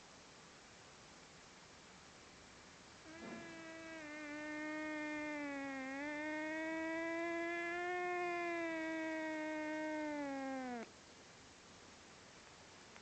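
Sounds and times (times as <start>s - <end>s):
cat yowling: 3.1s - 10.9s.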